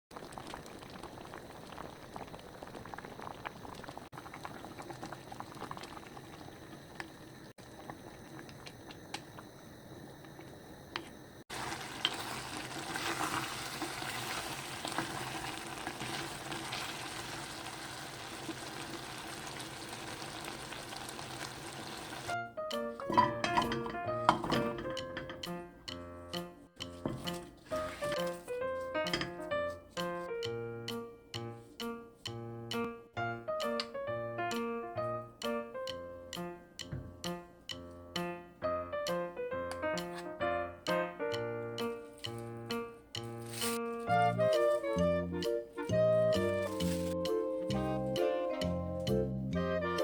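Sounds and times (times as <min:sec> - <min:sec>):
stew bubbling in a pot: 0:00.1 - 0:22.4.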